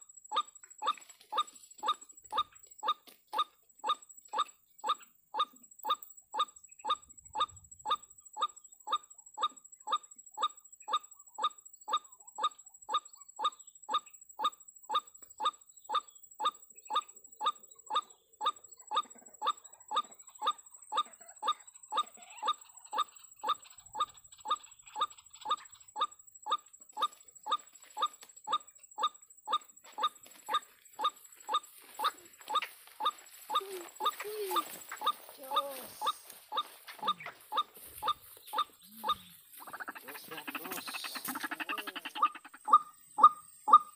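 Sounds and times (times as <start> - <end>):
waterhen calling harsh notes: 27.5 - 43.9.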